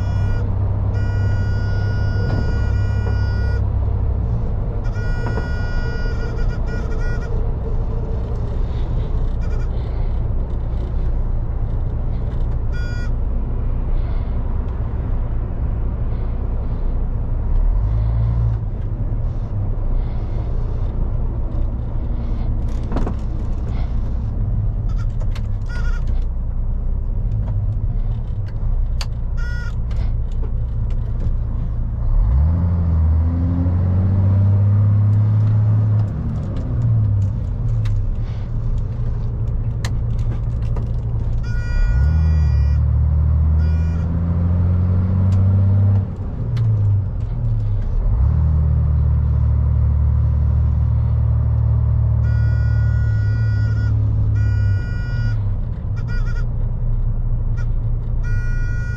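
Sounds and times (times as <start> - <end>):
high-pitched squeaks: 0.0 - 3.7, 4.8 - 10.0, 12.3 - 13.2, 24.9 - 26.2, 29.4 - 30.1, 41.2 - 44.5, 56.0 - 56.6, 57.5 - 58.9
lorry diesel engine driving: 0.0 - 58.9.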